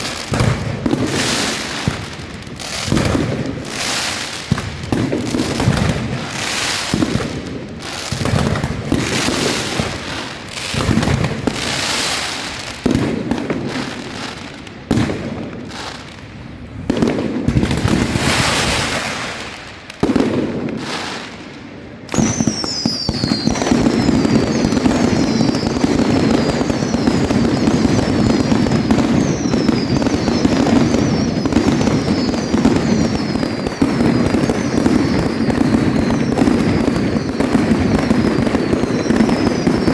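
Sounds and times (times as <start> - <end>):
fireworks bangs: 0.0 - 39.9
fireworks crackling barrage: 0.0 - 39.9
falling whistles: 22.1 - 39.9.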